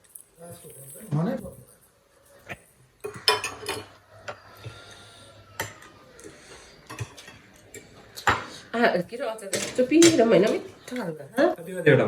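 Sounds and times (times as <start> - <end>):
faint breathing: 3.9 - 8.8.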